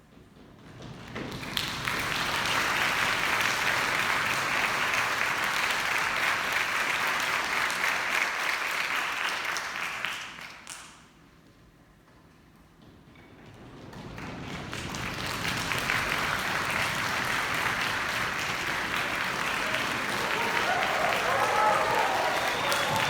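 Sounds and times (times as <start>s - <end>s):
audience applause: 1.2s - 10.6s, 14.3s - 23.0s.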